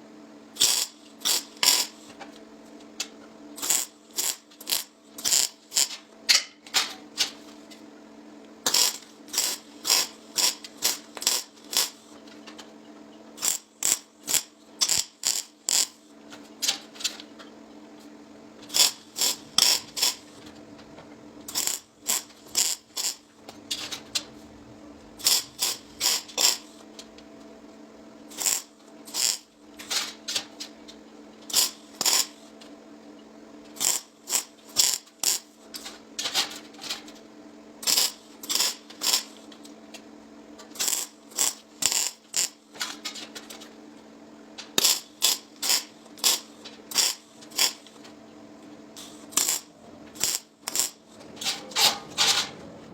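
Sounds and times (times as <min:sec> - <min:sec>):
steady hum: 0:07.2 - 0:35.8.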